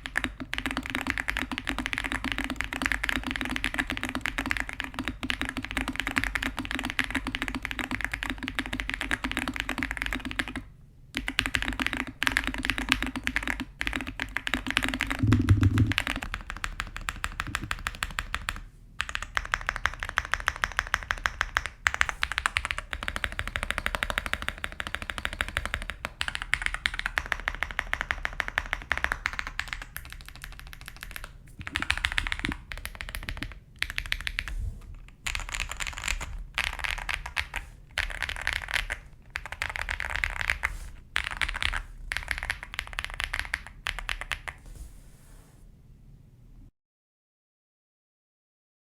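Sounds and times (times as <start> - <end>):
mechanical keyboard typing: 0.0 - 34.6, 35.2 - 44.6
heavy deep keyboard thump: 15.2 - 16.2.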